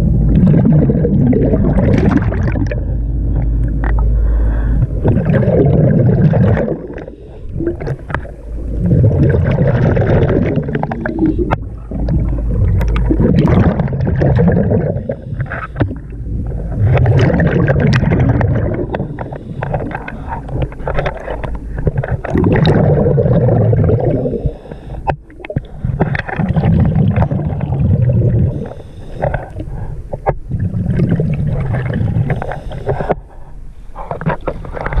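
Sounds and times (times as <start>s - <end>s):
exhaled bubbles gurgling underwater: 0.0s - 33.4s, 34.0s - 35.0s
diver inhaling through regulator: 2.6s - 9.6s, 10.6s - 12.4s, 14.6s - 17.1s, 18.6s - 21.8s, 23.6s - 26.0s, 27.8s - 30.2s, 32.0s - 34.3s.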